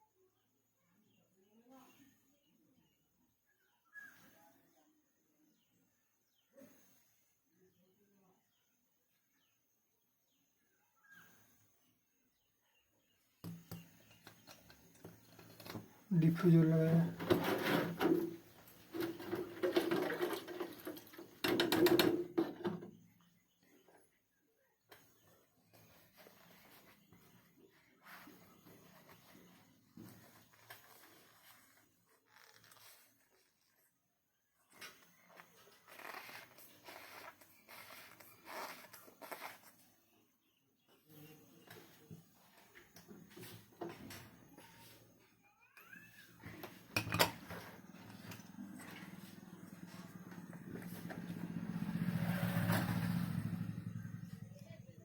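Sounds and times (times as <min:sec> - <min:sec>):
scraping and rubbing: 0:14.0 - 0:23.0, 0:25.8 - 0:33.9, 0:34.8 - 0:39.9
plastic rubbing with rapid clicks: 0:17.1 - 0:22.8.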